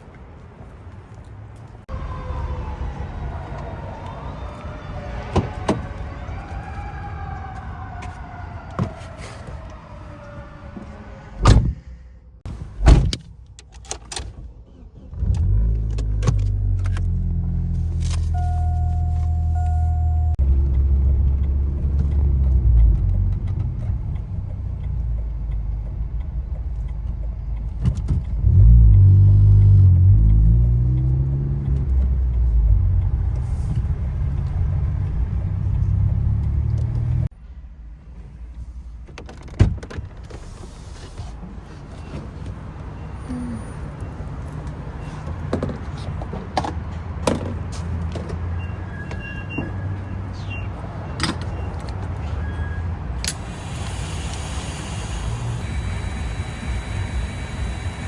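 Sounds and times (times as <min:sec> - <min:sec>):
vehicle engine rumbling: 0:00.0 - 0:58.0
short electronic beep: 0:18.4 - 0:20.4.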